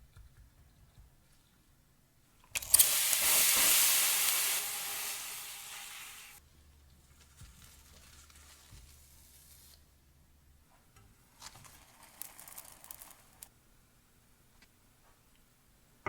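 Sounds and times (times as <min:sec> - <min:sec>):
bread sizzling in a frying pan: 0:02.6 - 0:06.4.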